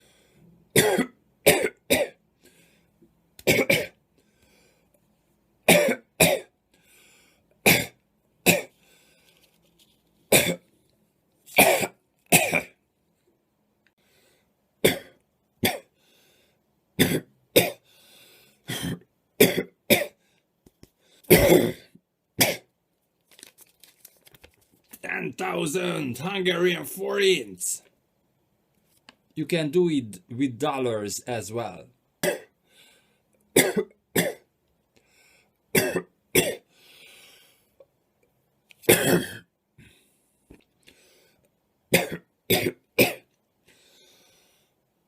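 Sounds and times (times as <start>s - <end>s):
person coughing: 0.8s - 2.2s, 3.5s - 4.0s, 5.7s - 6.5s, 10.3s - 10.6s, 11.6s - 12.8s, 14.8s - 15.9s, 17.0s - 17.8s, 18.7s - 20.2s, 21.3s - 22.7s, 32.2s - 32.5s, 33.6s - 34.5s, 35.8s - 36.7s, 38.9s - 39.5s, 42.0s - 43.3s.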